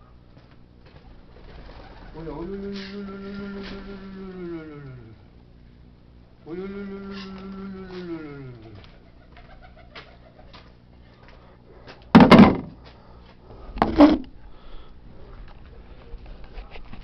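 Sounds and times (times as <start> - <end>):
pigeons cooing: 1.0 - 5.2, 6.5 - 10.8.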